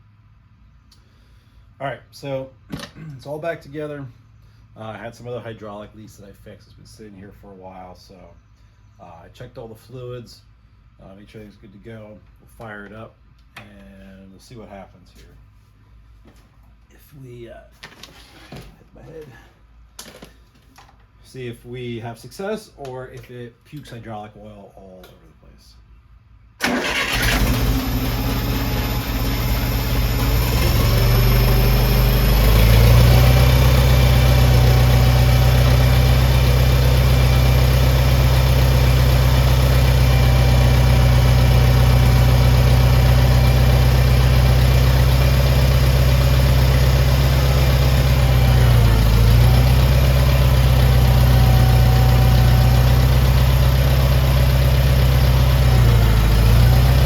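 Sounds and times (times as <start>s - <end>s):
tractor engine idling: 26.6s - 57.0s.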